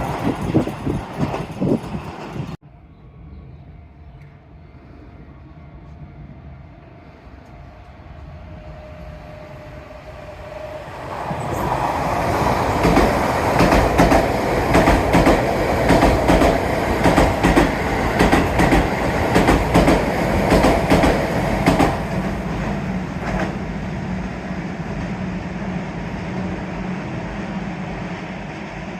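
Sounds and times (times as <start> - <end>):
electric train hum: 0.0 - 28.9
train wheels clattering over rail joints: 12.8 - 22.2.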